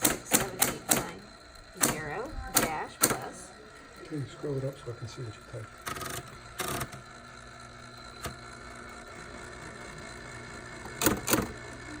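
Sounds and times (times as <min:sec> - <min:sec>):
typewriter click: 0:00.0 - 0:01.1, 0:11.0 - 0:11.5
typewriter platen ratcheting: 0:00.0 - 0:01.2, 0:11.0 - 0:11.5
steady low hum: 0:00.0 - 0:12.0.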